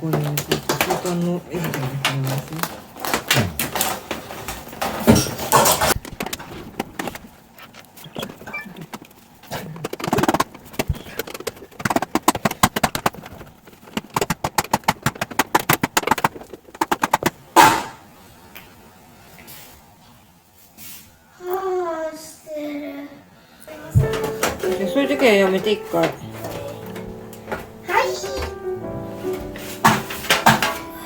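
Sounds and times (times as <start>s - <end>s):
sharp clicks and rattles: 0.2s - 17.8s, 24.0s - 28.6s.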